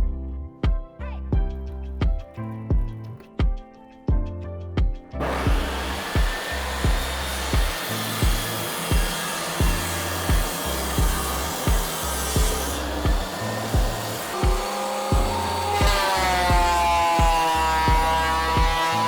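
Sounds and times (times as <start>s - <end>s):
background music with thumping beat: 0.0s - 19.0s
power tool running: 5.2s - 19.0s.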